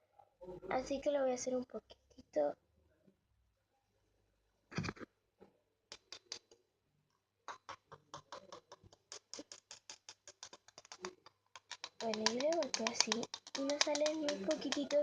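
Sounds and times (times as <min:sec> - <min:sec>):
plastic tube tapping: 0:07.5 - 0:15.0.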